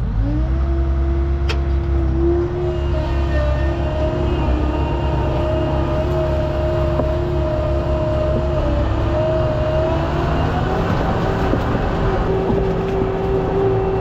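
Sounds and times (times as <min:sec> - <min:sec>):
tractor engine under load: 0:00.0 - 0:14.0.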